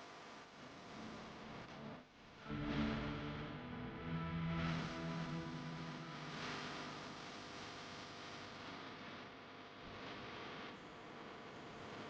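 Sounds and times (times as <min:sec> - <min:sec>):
music with sustained notes: 0:02.5 - 0:06.4.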